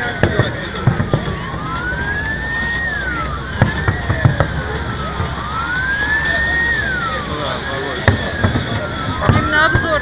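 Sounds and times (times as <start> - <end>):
siren wailing: 0.0 - 10.0
fireworks bangs: 0.1 - 1.7, 3.5 - 5.5, 7.5 - 10.0.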